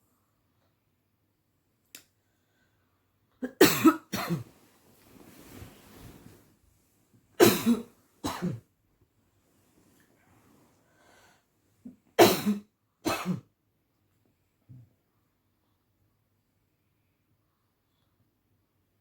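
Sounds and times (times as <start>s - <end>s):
person coughing: 3.4s - 4.5s, 7.4s - 8.6s, 12.2s - 13.5s.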